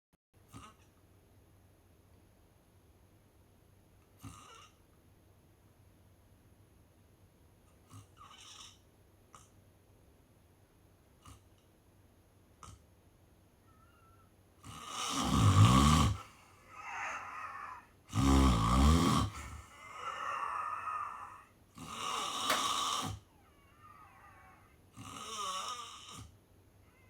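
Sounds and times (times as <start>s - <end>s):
person snoring: 14.7s - 23.2s, 23.8s - 26.3s
soft breathing: 19.2s - 21.5s.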